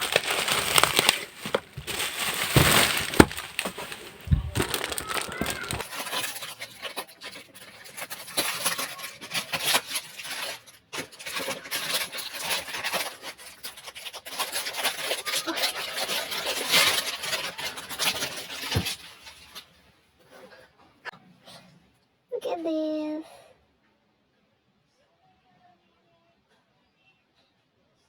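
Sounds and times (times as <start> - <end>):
packaging rustling and crinkling: 0.0 - 19.7.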